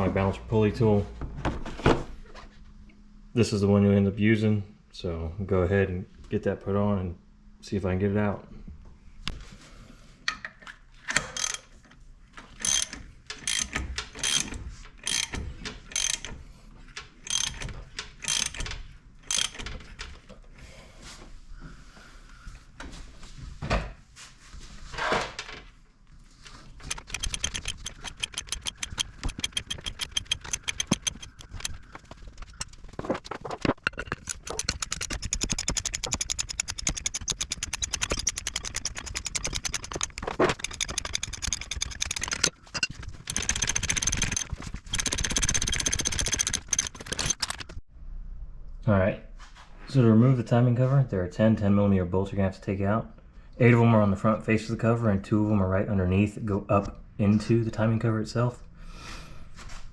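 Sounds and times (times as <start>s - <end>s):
hand ratchet clicking: 11.1s - 11.7s, 12.6s - 16.4s, 17.0s - 19.8s, 26.8s - 32.8s, 33.9s - 47.7s.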